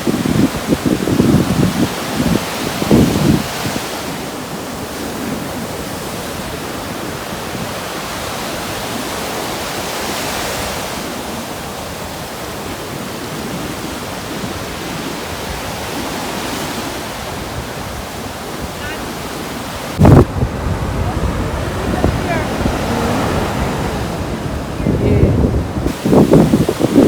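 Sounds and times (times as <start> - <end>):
wind buffeting microphone: 0.0 - 9.4, 10.6 - 27.0
ocean waves washing: 0.0 - 27.0.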